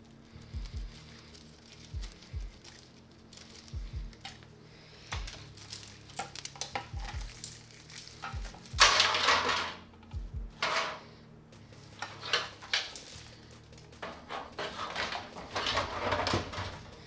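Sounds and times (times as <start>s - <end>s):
loud scraping rustle: 0.0s - 17.0s
computer parts clicking and knocking: 5.1s - 11.0s, 11.9s - 17.0s.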